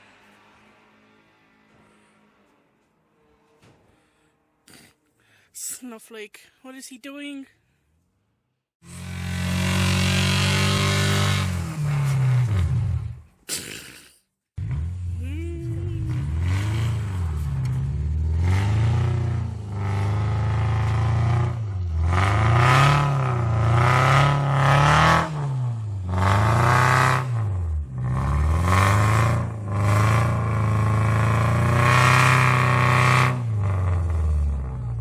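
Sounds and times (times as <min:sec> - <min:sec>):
car engine revving: 0:08.8 - 0:13.3, 0:14.6 - 0:35.0.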